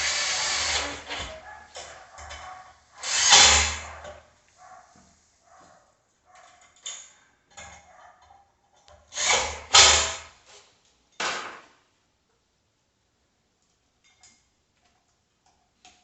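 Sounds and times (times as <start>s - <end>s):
hard parts scraping: 0.0s - 4.2s.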